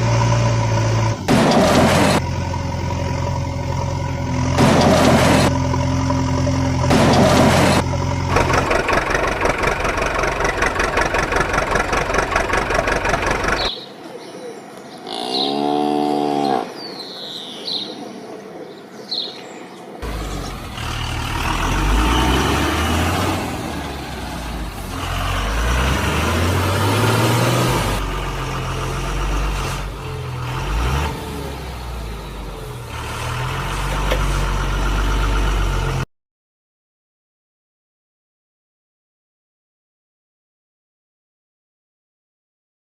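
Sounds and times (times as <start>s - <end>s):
cartoon truck engines revving: 0.0s - 13.8s, 20.0s - 36.1s.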